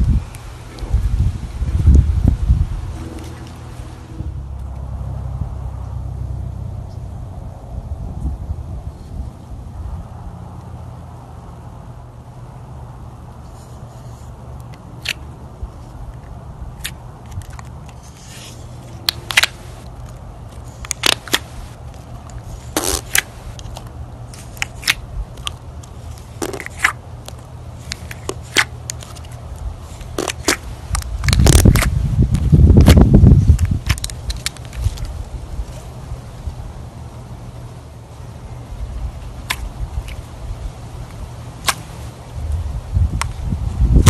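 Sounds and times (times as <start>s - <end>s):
low rumbling handling noise: 0.0s - 11.3s
steady low hum: 0.0s - 44.0s.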